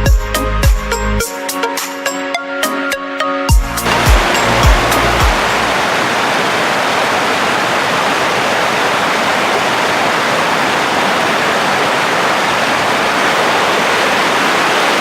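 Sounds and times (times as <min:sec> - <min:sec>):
waterfall rushing: 0:03.8 - 0:15.0.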